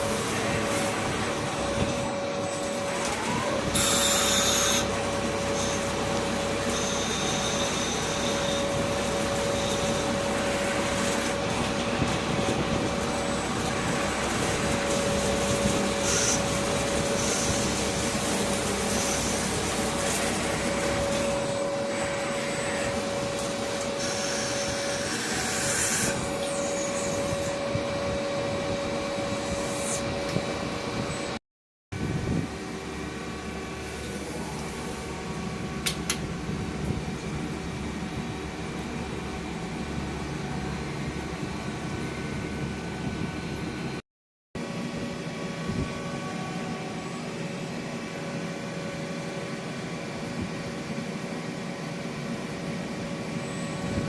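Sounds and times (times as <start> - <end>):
lathe whining: 0.0 - 31.4.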